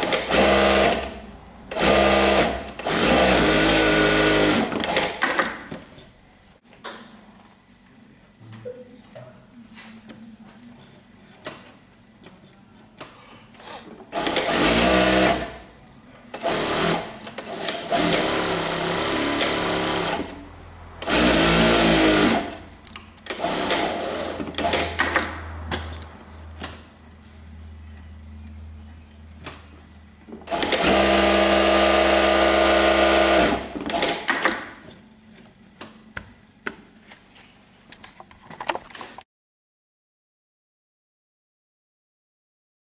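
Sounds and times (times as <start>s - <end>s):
sewing machine stitching: 0.0s - 5.6s, 14.1s - 15.6s, 16.4s - 20.4s, 21.0s - 22.6s, 23.2s - 26.1s, 30.4s - 34.7s.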